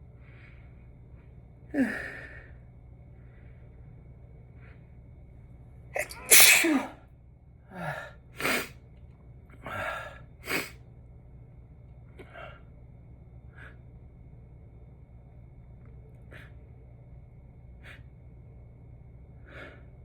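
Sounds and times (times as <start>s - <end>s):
faint breaths: 0.0s - 5.2s
person sneezing: 6.0s - 7.0s.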